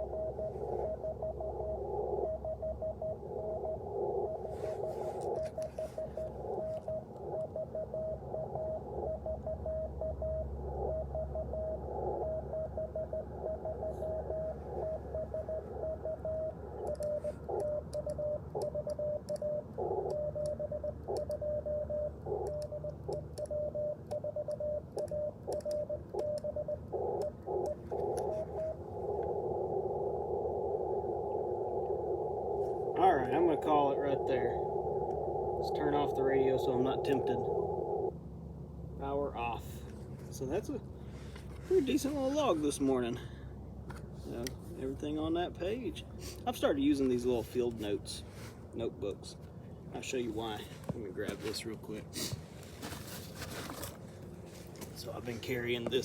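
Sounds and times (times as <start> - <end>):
receiver hiss: 0.0 - 21.5, 25.6 - 38.2
morse code tone: 0.0 - 30.4.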